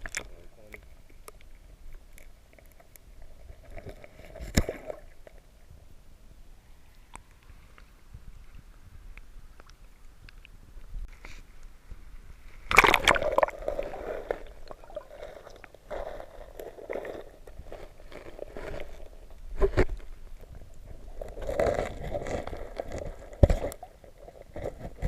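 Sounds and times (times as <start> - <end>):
water sloshing and splashing: 12.5 - 20.2
loud splash: 12.7 - 14.0.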